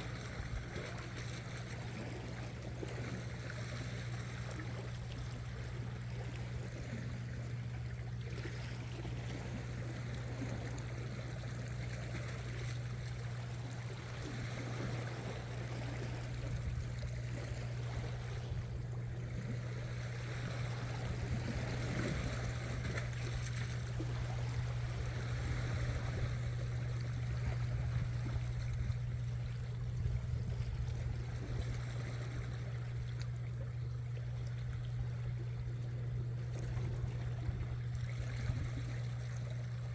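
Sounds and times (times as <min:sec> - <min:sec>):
low hum: 0:00.0 - 0:39.9
sea water washing against rocks: 0:08.2 - 0:33.4.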